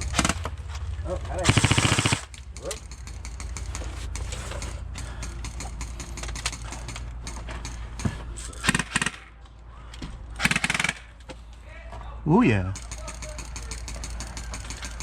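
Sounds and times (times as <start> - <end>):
airsoft gun full-auto bursts: 0.0 - 0.5, 1.4 - 3.8, 8.6 - 9.3, 10.4 - 11.1, 12.8 - 15.0.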